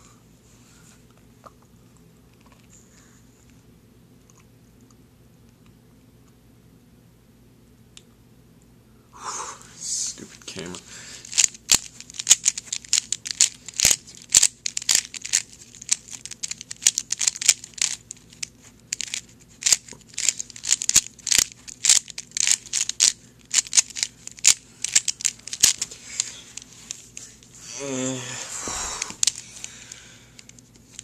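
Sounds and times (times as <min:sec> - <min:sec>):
puzzle cube clicking: 0:11.2 - 0:27.3, 0:29.0 - 0:29.8.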